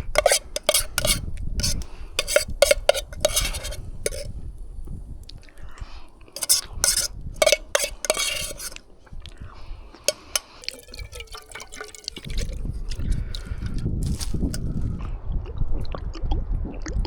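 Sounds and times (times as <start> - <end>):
spoon scraping metal pot: 0.0 - 4.4, 6.3 - 9.0, 10.0 - 14.7
wet oatmeal sounds: 0.0 - 4.4, 6.2 - 14.8.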